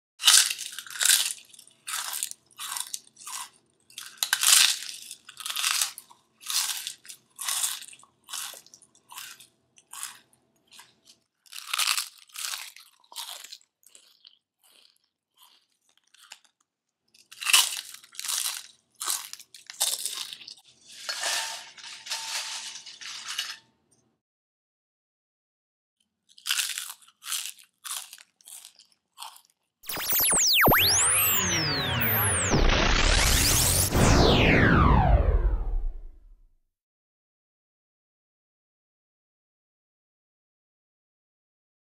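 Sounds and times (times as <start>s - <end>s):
crunchy chewing of crisp food: 0.2s - 21.0s, 26.0s - 29.7s.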